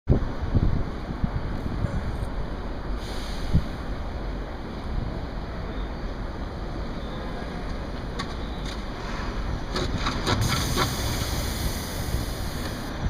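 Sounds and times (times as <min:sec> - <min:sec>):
wind on microphone: 0:00.1 - 0:04.2, 0:09.3 - 0:13.0
street noise: 0:00.1 - 0:13.0.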